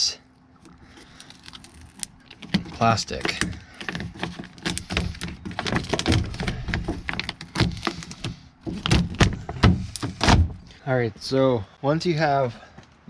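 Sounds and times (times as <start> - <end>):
plastic sheet crinkling: 1.0 - 10.2.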